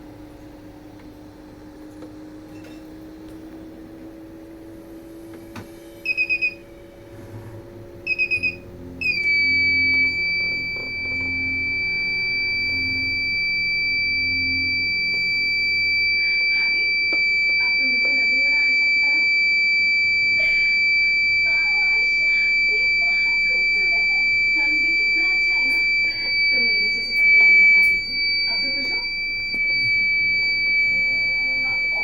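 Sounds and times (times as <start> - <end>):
low hum: 0.0 - 32.0
continuous beep: 6.0 - 6.6, 8.0 - 32.0
water purifier rapid high beeps: 6.0 - 7.0, 8.0 - 32.0.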